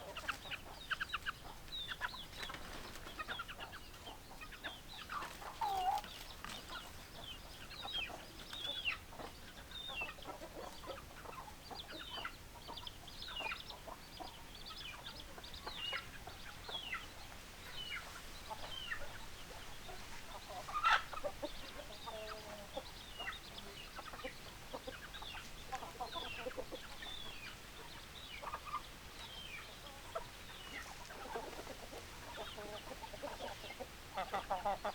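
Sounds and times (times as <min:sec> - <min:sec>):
chickens clucking: 0:00.0 - 0:34.9.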